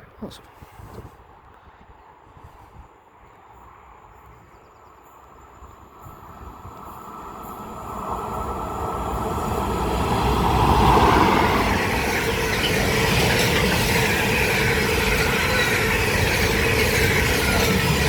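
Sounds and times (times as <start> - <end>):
train rumbling past: 5.0 - 18.0.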